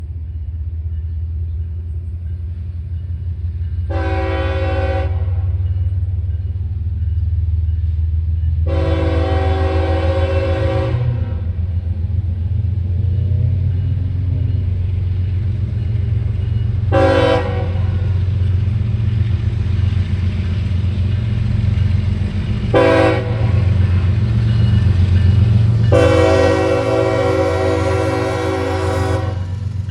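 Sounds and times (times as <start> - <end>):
locomotive engine rumbling: 0.0 - 29.9
locomotive air horn blasts: 3.9 - 5.5, 8.6 - 11.6, 16.9 - 18.2, 22.7 - 23.7, 25.9 - 29.6.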